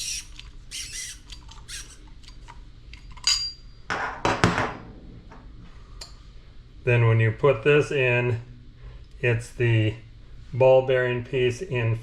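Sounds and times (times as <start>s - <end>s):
small metal parts clinking: 2.9s - 3.6s
metallic ring: 3.2s - 3.9s.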